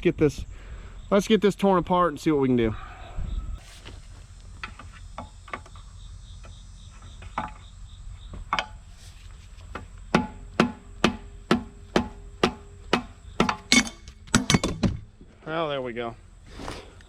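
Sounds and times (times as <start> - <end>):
ringing metal knocks: 4.6 - 8.9, 9.7 - 15.0.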